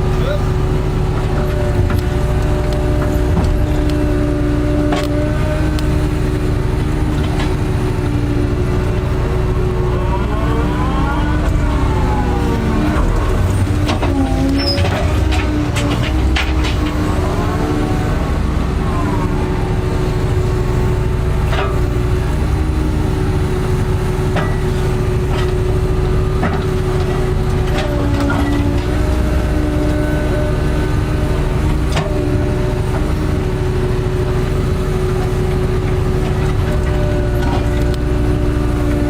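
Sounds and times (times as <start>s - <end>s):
heavy machine engine drone: 0.0s - 39.0s.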